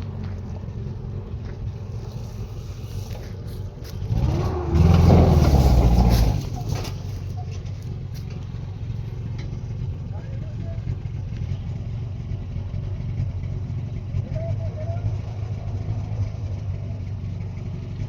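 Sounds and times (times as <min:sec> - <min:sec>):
vehicle engine revving: 0:00.0 - 0:18.0.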